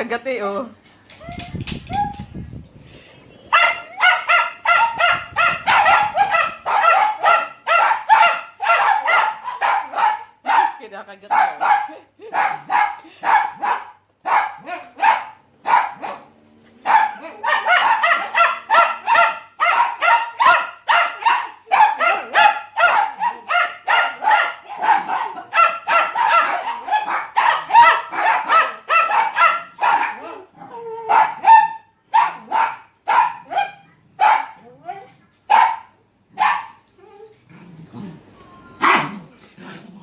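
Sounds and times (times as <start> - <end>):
dogs barking angrily: 3.5 - 34.7, 35.4 - 36.9, 38.8 - 40.0.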